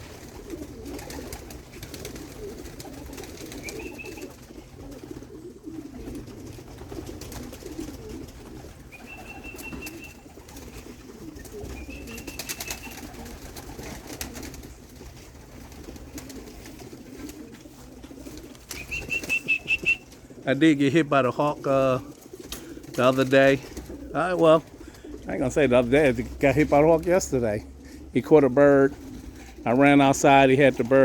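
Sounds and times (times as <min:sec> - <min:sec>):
pigeons cooing: 0:00.0 - 0:31.0.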